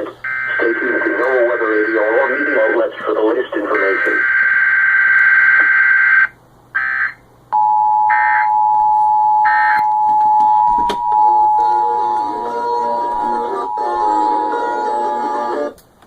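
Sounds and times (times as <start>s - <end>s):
two-tone attention signal: 0.3s - 2.8s, 7.6s - 11.9s, 13.0s - 15.2s
digital data screech: 0.5s - 2.9s.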